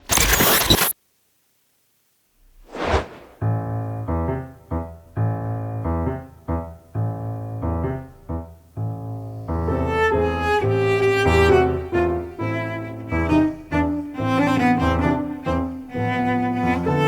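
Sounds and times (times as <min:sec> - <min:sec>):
piano chords: 0:03.4 - 0:17.0.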